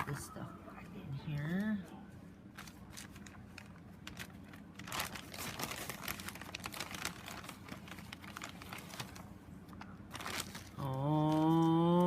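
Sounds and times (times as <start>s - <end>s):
faint low hum: 0.0s - 12.0s
packaging crinkling and rustling: 2.4s - 12.0s.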